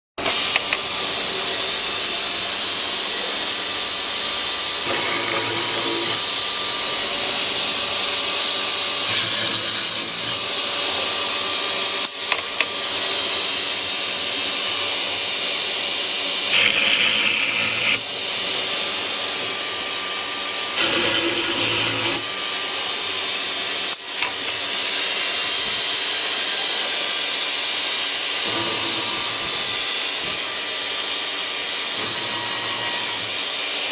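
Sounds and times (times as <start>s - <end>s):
router spindle whine: 0.2s - 33.9s
dust extraction noise: 16.5s - 18.1s.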